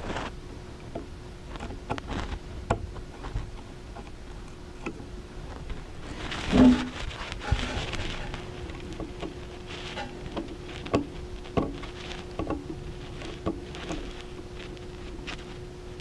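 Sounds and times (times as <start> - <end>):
faint hum: 0.0 - 16.0.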